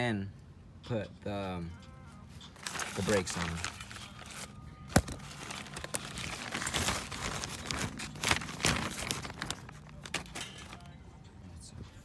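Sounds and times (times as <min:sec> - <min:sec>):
metal parts clicking and scraping: 0:10.0 - 0:10.9.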